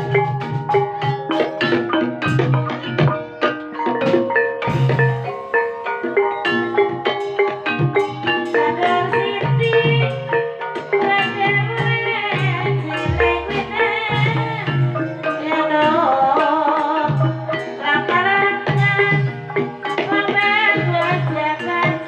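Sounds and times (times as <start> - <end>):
person singing wavering melody: 0.0 - 22.0
struck mallet notes: 0.0 - 22.0
hand drum strokes: 10.8 - 22.0.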